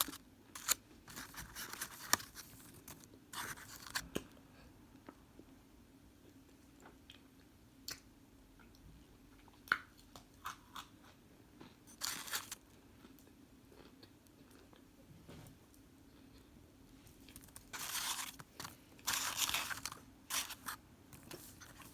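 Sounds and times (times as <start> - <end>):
crunchy food being chewed: 0.0 - 4.2, 9.4 - 14.8, 16.1 - 21.9
faint steady hum: 0.0 - 21.9.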